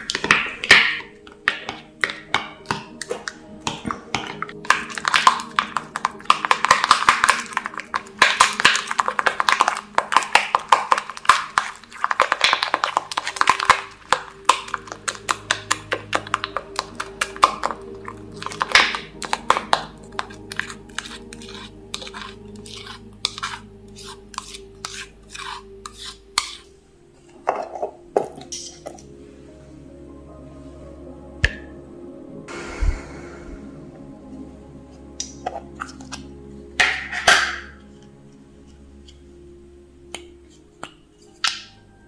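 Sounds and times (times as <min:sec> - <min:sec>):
spoon clicking and scraping bowl: 0:00.0 - 0:29.1, 0:35.2 - 0:38.1.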